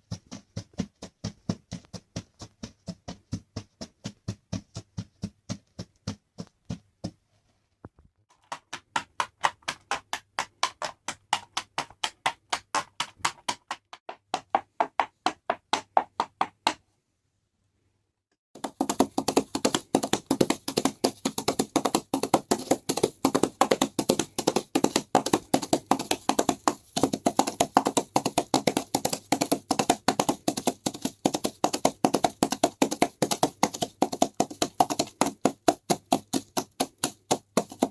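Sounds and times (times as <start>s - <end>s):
horse hoofbeats clip-clopping: 0.0s - 7.3s, 18.6s - 37.9s.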